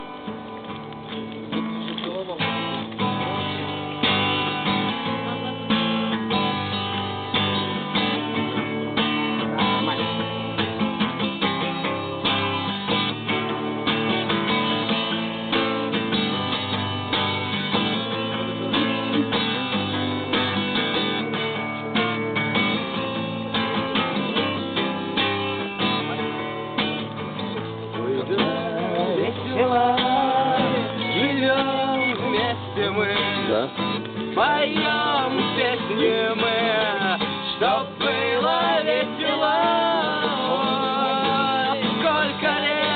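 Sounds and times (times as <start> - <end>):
acoustic guitar strumming: 0.0 - 42.9
person singing: 28.3 - 33.5, 34.4 - 42.9.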